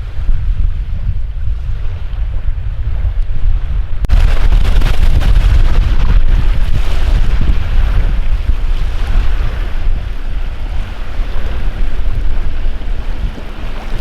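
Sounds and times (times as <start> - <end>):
helicopter rotor rumble: 3.0 - 14.0.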